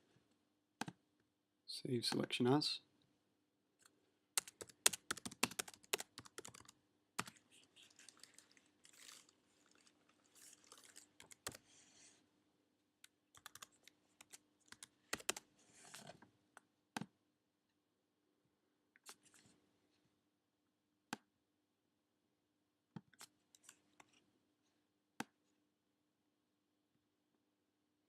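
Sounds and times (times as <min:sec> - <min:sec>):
typing on keyboard: 0:04.4 - 0:09.2, 0:10.6 - 0:11.6, 0:13.0 - 0:15.5.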